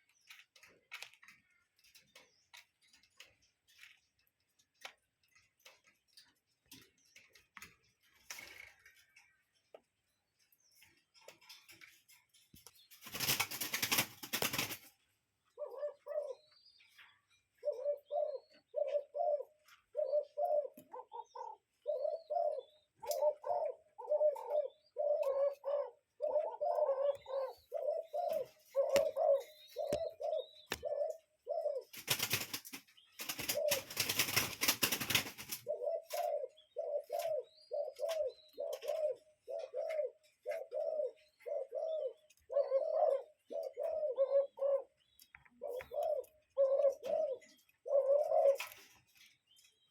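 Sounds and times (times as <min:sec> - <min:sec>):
cuckoo calling: 0:15.5 - 0:32.4, 0:33.0 - 0:34.4, 0:35.0 - 0:49.9.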